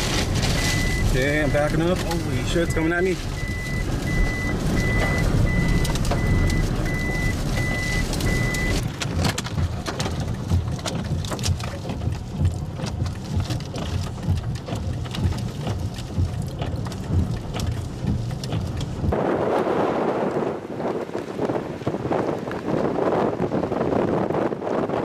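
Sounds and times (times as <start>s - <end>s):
rain pelting a vehicle: 0.0s - 19.2s
low rumble of wind and engine: 0.0s - 25.0s
vehicle reversing beeper: 0.5s - 8.8s.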